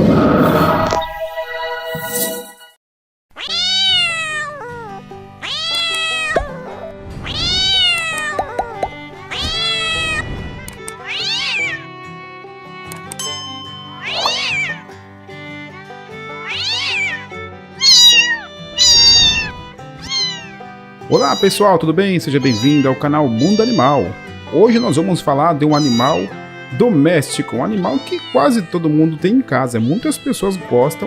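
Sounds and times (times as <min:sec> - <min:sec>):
cat meowing: 0:03.4 - 0:11.9, 0:14.0 - 0:14.9, 0:16.4 - 0:21.6, 0:22.4 - 0:26.4, 0:27.8 - 0:28.8, 0:29.8 - 0:30.7
background music: 0:03.8 - 0:31.0.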